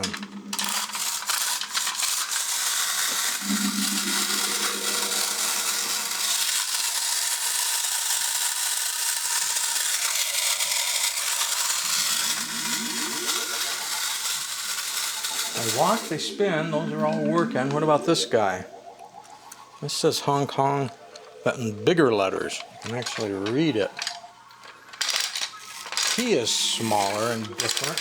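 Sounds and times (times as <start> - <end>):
clockwork toy motor whirring: 0.0 - 16.3, 22.5 - 28.0.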